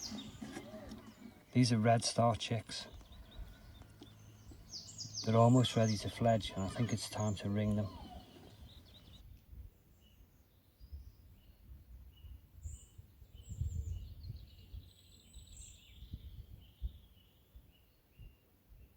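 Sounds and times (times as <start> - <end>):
birds calling high notes: 0.0 - 9.2
buzzy bird twittering: 0.0 - 9.2.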